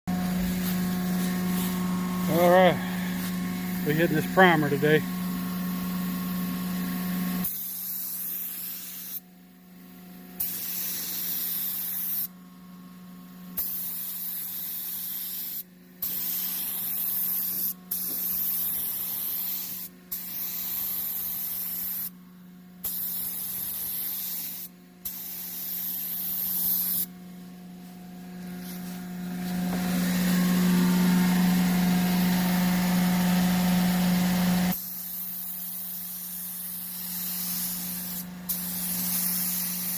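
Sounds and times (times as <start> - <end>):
spray gun hissing: 0.2 - 5.6, 7.4 - 9.2, 10.4 - 12.3, 13.6 - 22.1, 22.8 - 27.1, 34.7 - 39.9.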